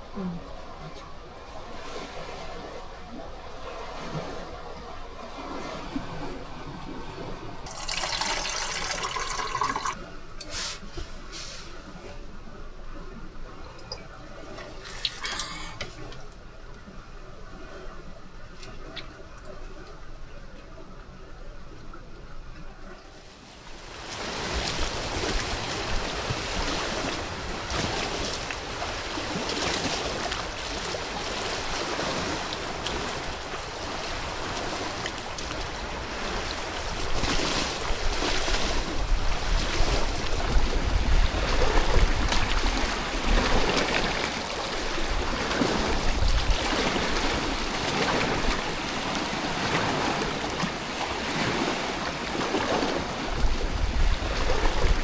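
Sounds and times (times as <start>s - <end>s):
wind buffeting microphone: 32.2s - 43.8s, 44.8s - 52.0s, 52.8s - 55.0s.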